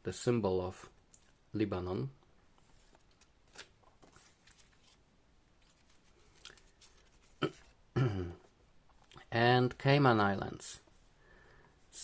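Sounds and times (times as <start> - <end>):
banknotes rustling: 2.6 - 7.8.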